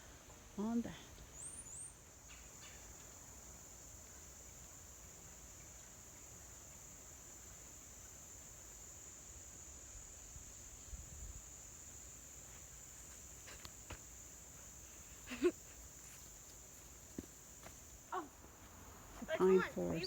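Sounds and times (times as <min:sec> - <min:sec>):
crickets chirping: 0:00.0 - 0:20.0
soft footfalls: 0:12.5 - 0:14.2, 0:16.0 - 0:20.0.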